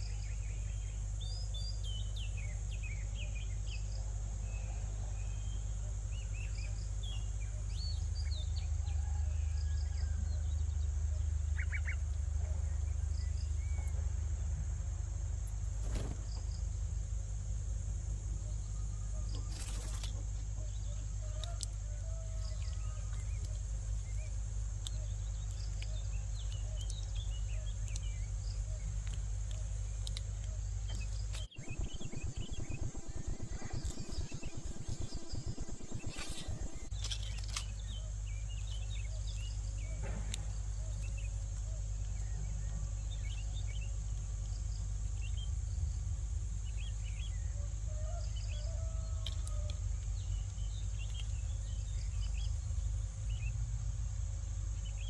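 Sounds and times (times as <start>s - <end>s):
low steady rumble: 9.8s - 55.0s
high insect drone: 13.2s - 42.4s.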